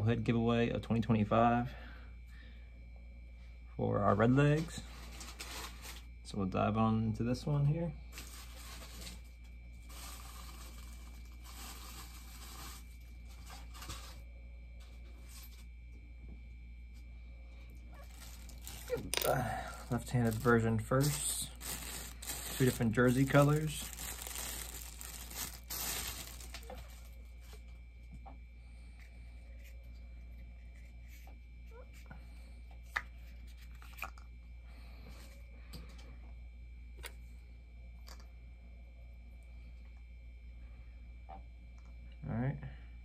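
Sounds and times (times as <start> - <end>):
packaging rustling and tearing: 4.9 - 6.1, 8.1 - 14.2, 18.0 - 19.1, 19.8 - 27.6.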